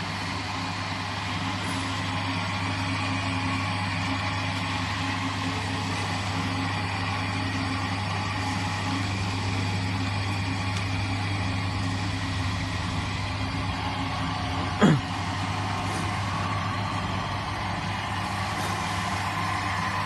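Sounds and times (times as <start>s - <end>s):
lathe motor humming: 0.0s - 20.0s.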